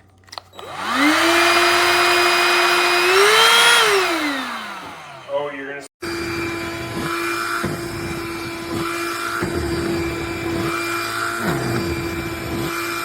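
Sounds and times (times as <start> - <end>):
handheld vacuum running: 0.5 - 13.0.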